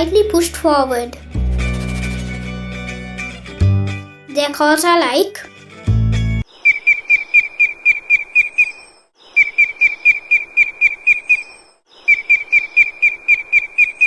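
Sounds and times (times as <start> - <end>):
eagle shrill whistled calls: 6.4 - 14.0.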